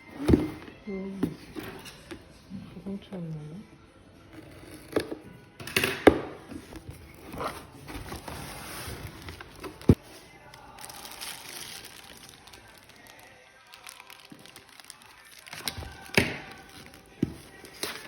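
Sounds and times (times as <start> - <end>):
rustling and crinkling: 6.6 - 18.0.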